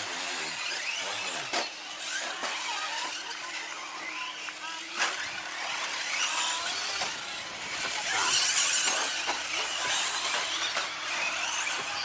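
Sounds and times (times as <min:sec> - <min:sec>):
electric motors whining: 0:00.0 - 0:12.0
tyres on gravel: 0:05.0 - 0:12.0.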